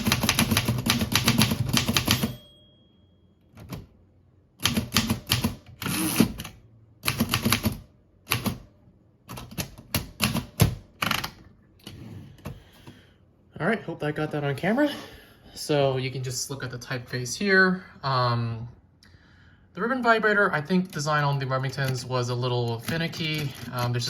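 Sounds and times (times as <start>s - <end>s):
typewriter keystrokes: 0.0s - 2.3s, 4.6s - 8.7s
typewriter bell ringing: 1.9s - 3.2s.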